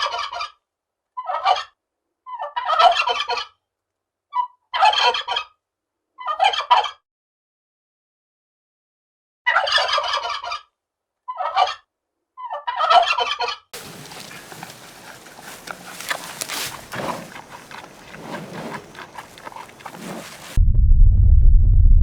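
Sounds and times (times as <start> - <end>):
turkey gobbling: 13.8 - 20.6.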